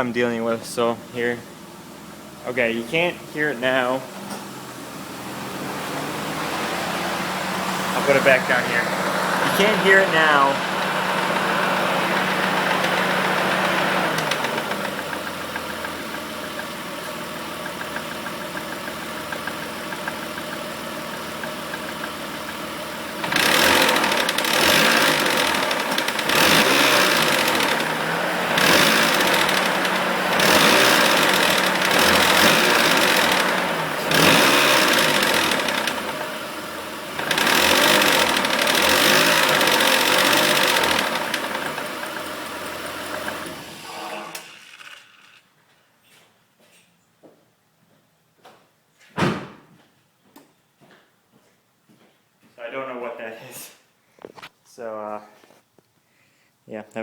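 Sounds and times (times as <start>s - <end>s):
car engine idling and revving: 1.0s - 45.0s.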